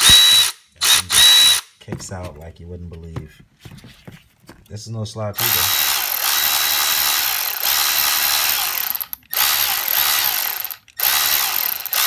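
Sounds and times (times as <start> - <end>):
cordless ratchet motor whine: 0.0 - 1.6, 5.4 - 12.0.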